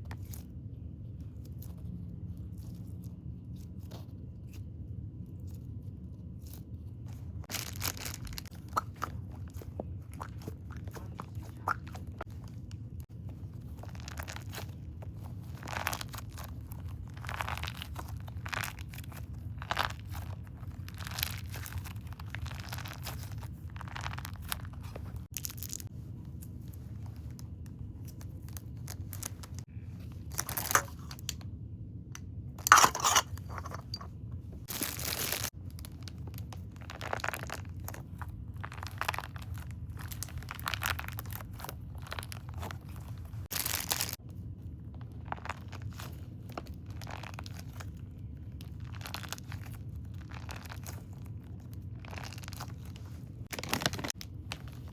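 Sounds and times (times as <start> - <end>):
steady low hum: 0.0 - 54.9
plastic packaging crinkling and tearing: 6.4 - 31.4, 32.6 - 34.0, 34.6 - 54.9.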